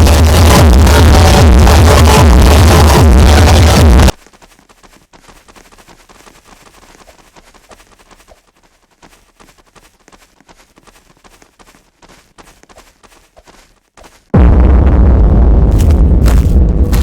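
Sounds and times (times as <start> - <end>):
loud electronic music: 0.0 - 4.1, 14.4 - 17.0.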